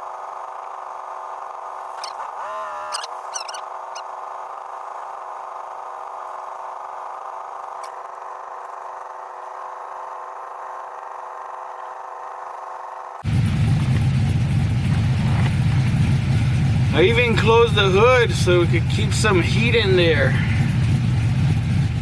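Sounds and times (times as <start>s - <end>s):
electric radiator fans running: 0.0s - 22.0s
truck idling: 0.0s - 22.0s
loud deep rumble: 13.2s - 22.0s.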